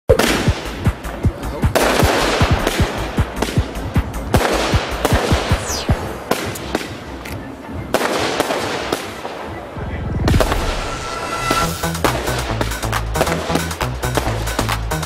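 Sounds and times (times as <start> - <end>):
fireworks bangs: 0.1 - 1.1, 1.7 - 7.2, 7.9 - 14.5
fireworks crackling: 0.1 - 9.6, 10.3 - 15.0
falling firework whistle: 10.3 - 11.9.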